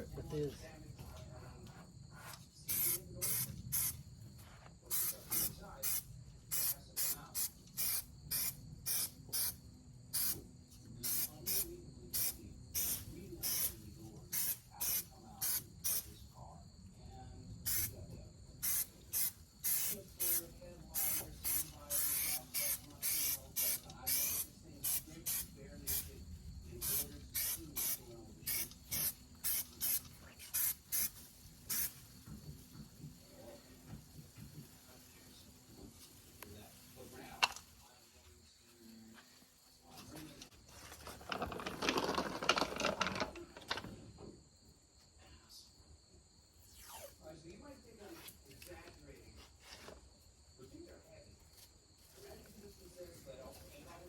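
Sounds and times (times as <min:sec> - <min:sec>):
spray primer hissing bursts: 0:02.7 - 0:04.0, 0:04.9 - 0:10.4, 0:11.0 - 0:16.1, 0:17.6 - 0:17.9, 0:18.6 - 0:26.1, 0:26.8 - 0:32.2.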